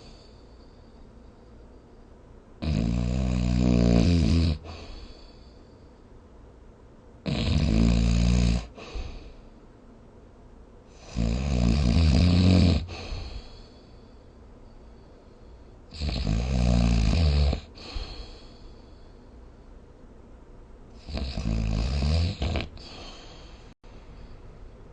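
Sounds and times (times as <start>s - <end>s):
rattling snores: 2.6s - 4.7s, 7.2s - 8.8s, 11.0s - 13.4s, 15.9s - 18.3s, 21.0s - 23.4s.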